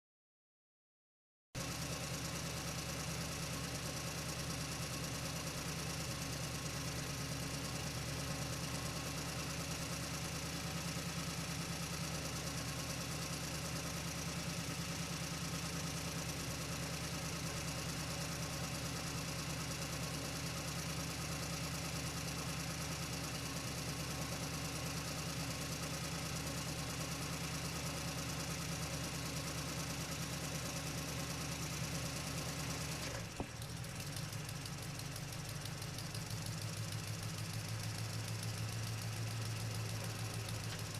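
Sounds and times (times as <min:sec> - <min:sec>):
truck engine droning: 0:32.4 - 0:40.9.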